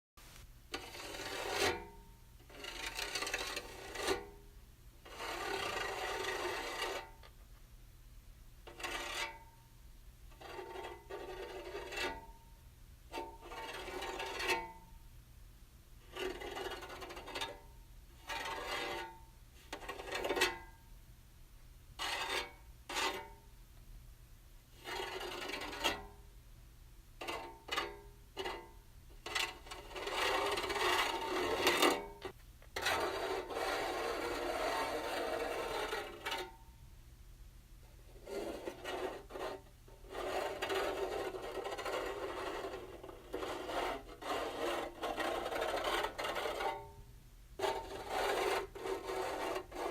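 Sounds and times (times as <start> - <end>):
fingernails scratching metal: 0.7 - 4.4, 5.1 - 7.2, 8.7 - 9.5, 10.3 - 12.4, 13.2 - 14.8, 16.0 - 20.7, 22.0 - 23.4, 24.7 - 26.2, 27.2 - 36.6, 38.1 - 47.0, 47.6 - 49.9.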